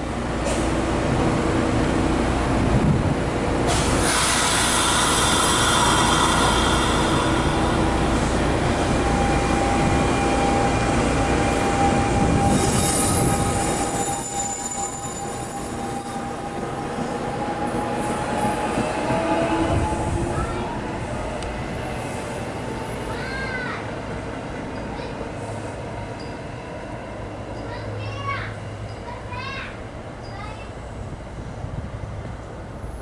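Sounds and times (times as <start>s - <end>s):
train rumble: 0.0s - 33.0s
train wheels squealing: 11.6s - 20.2s.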